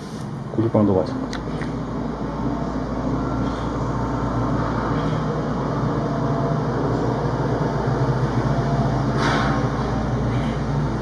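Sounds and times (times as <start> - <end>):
steady low machine hum: 0.0 - 11.0.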